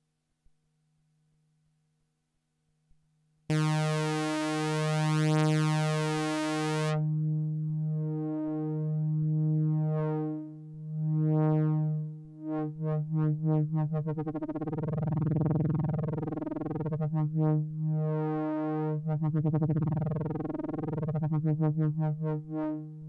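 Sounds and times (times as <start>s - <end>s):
low buzzy synthesizer note: 3.5s - 23.0s.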